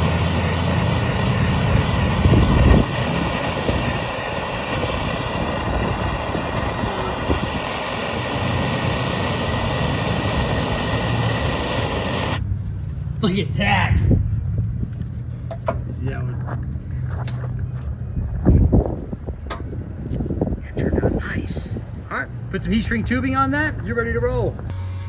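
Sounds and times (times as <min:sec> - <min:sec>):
soldering torch flame hissing: 0:00.0 - 0:12.4.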